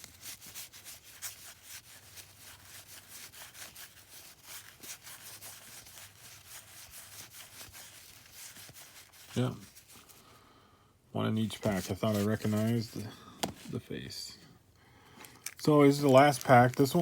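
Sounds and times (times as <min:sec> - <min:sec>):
cards sliding over each other: 0:11.4 - 0:13.8.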